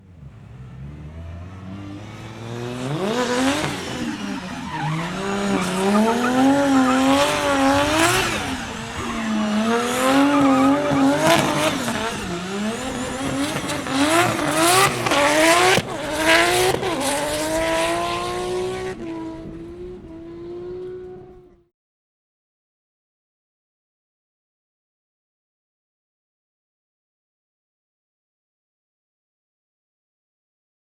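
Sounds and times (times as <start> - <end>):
car engine revving: 0.0 - 21.6
tyres squealing: 1.0 - 17.1.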